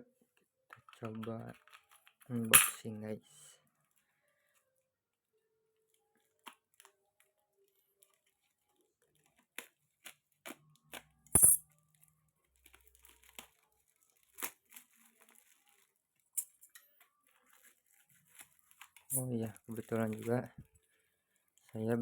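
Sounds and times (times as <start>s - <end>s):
parcel rustling and crinkling: 11.8s - 22.0s.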